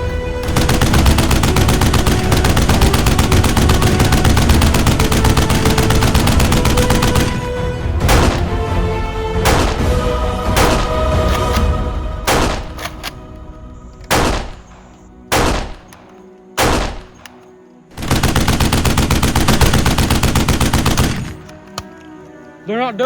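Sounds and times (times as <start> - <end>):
rapid automatic gunfire: 0.0 - 8.8, 9.5 - 10.0, 10.6 - 11.3, 12.3 - 12.8, 14.1 - 14.7, 15.3 - 15.9, 16.6 - 17.2, 18.0 - 21.4
single gunshots: 0.4 - 11.7, 12.3 - 13.0, 14.1 - 17.4.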